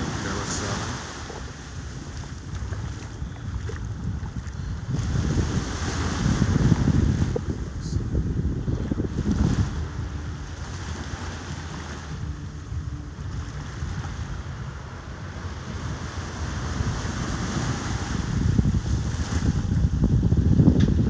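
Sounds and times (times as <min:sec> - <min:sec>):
surf breaking on beach: 0:00.0 - 0:03.0, 0:04.9 - 0:12.2, 0:15.7 - 0:20.0
wind buffeting microphone: 0:00.0 - 0:21.0.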